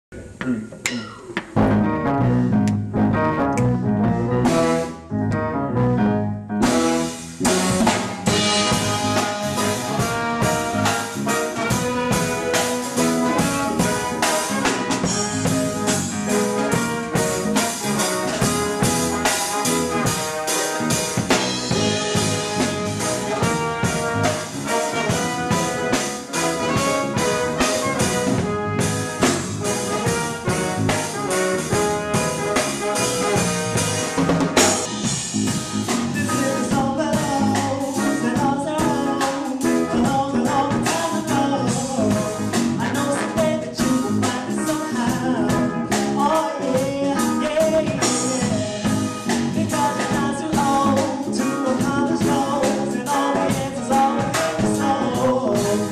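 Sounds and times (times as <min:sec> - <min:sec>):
live reggae band playing: 0:00.2 - 0:55.9
horn section: 0:01.7 - 0:46.7, 0:47.5 - 0:55.9
person singing: 0:36.2 - 0:55.9.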